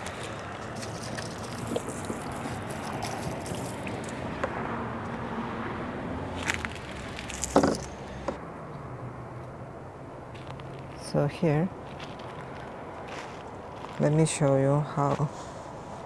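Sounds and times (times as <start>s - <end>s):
water splashing onto plants: 0.0s - 4.4s
handling clicks and knocks: 6.4s - 8.4s.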